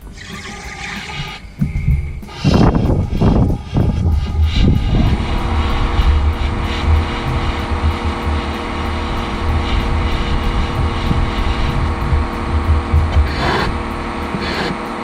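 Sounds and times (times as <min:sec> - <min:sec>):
machine motor humming: 0:00.0 - 0:15.0.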